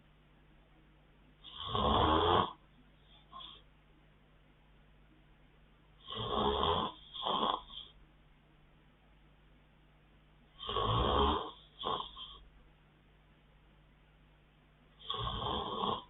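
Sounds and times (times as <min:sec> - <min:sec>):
man snoring: 0:01.4 - 0:02.6, 0:06.0 - 0:07.9, 0:10.6 - 0:12.4, 0:15.0 - 0:16.0.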